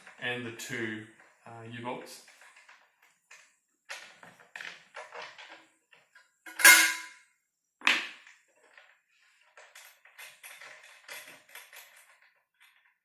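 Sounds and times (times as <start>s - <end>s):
loud ringing metallic clank: 6.5s - 7.1s
loose metal parts clinking: 6.5s - 7.2s.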